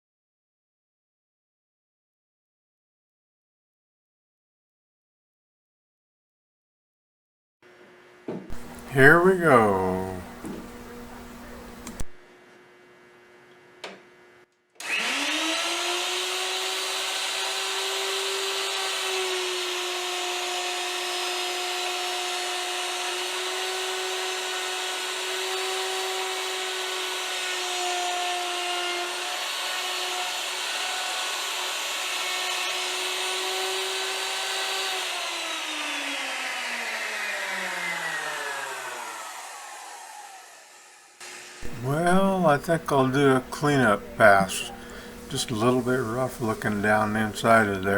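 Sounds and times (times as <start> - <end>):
wood router whining: 14.8 - 47.9.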